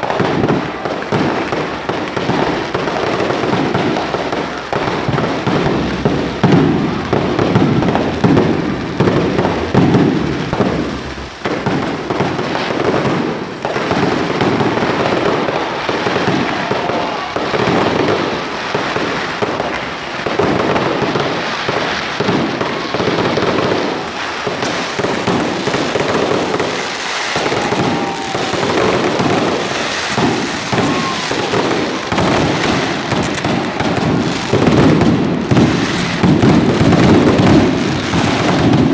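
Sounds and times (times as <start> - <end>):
fireworks bangs and crackles: 0.0 - 38.9.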